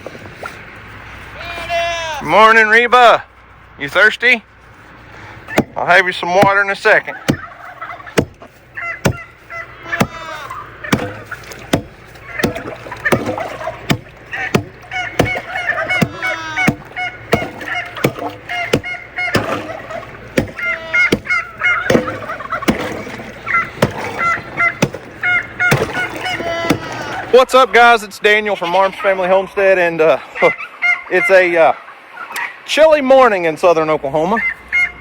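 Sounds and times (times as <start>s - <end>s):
geese honking: 4.6s - 27.9s, 30.1s - 32.6s, 34.2s - 35.0s
sharp knocks: 5.5s - 5.8s, 7.3s - 7.6s, 8.2s - 9.3s, 10.9s - 27.0s.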